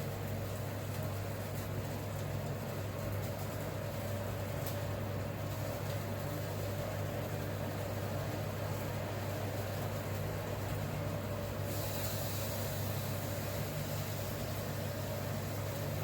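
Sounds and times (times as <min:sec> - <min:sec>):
even hiss: 0:11.6 - 0:14.8.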